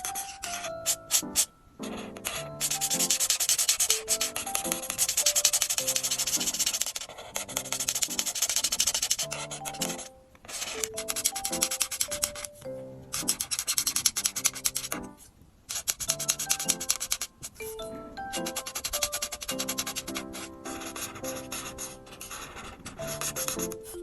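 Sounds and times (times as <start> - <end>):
paper scraping against paper: 0.0 - 12.2
light background music: 0.0 - 24.0.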